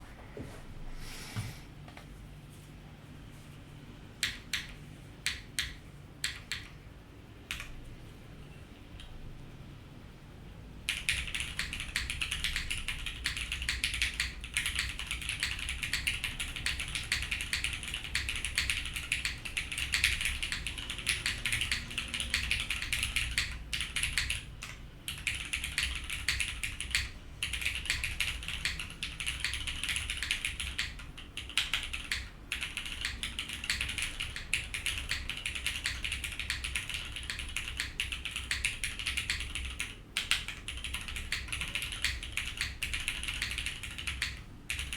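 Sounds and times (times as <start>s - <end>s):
mechanical keyboard typing: 4.2s - 6.8s, 7.5s - 7.8s, 10.9s - 44.9s.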